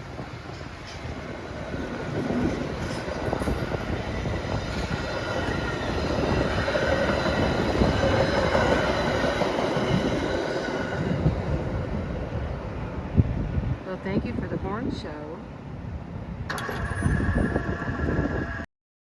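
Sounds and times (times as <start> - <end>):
train wheels rumbling on rail: 0.0 - 18.7
high wheel squeal: 16.5 - 18.7.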